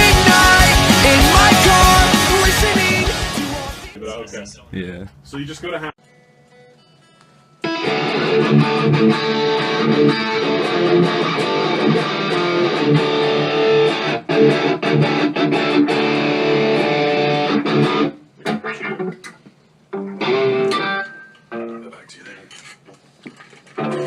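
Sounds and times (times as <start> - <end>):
electric guitar strumming chords: 0.0 - 4.0, 7.6 - 21.8, 23.8 - 24.0.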